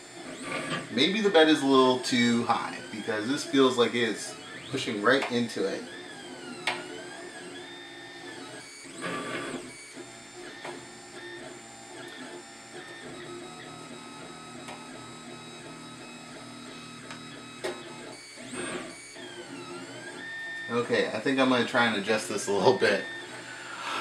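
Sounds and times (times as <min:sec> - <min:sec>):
stepper motors whining: 0:00.0 - 0:24.0
fan humming: 0:00.9 - 0:06.7.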